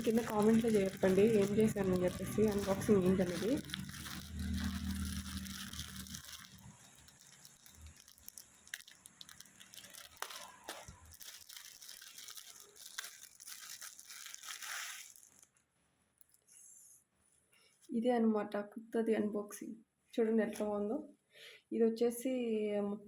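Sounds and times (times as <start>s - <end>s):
packaging rustling and tearing: 0.0s - 15.6s.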